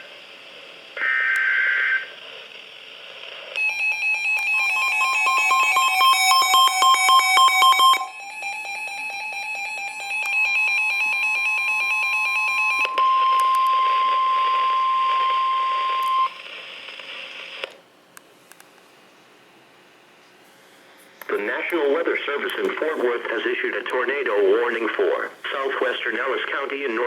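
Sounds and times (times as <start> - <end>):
steady electronic alarm tone: 3.6 - 16.4.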